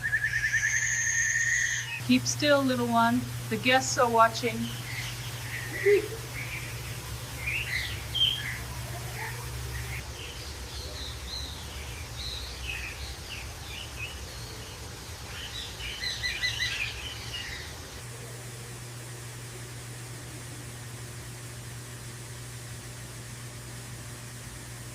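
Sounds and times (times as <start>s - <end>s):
bird chirping: 0.0s - 2.0s, 4.4s - 18.0s
steady low hum: 0.0s - 24.9s.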